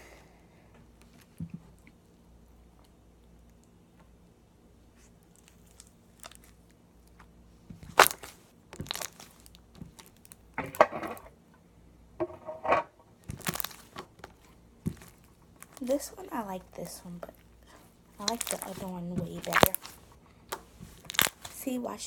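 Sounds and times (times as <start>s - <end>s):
slime popping and squelching: 5.3s - 10.9s, 13.2s - 21.6s.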